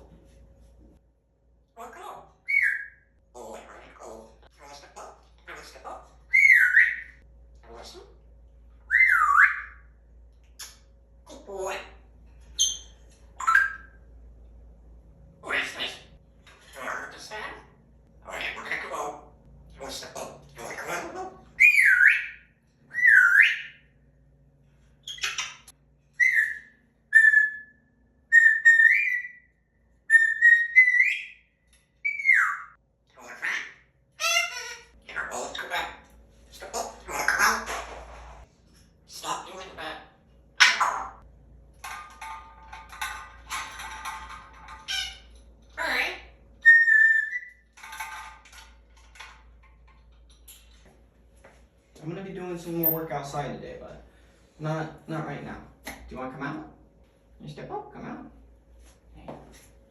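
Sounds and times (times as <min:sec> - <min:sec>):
parrot calls: 0:01.8 - 0:08.2, 0:08.8 - 0:10.0, 0:10.6 - 0:14.1, 0:15.4 - 0:24.0, 0:25.0 - 0:38.0, 0:39.1 - 0:49.4
parrot whistle: 0:06.3 - 0:07.2, 0:08.9 - 0:09.8, 0:21.6 - 0:23.8, 0:26.2 - 0:29.5, 0:30.1 - 0:31.4, 0:46.6 - 0:47.6.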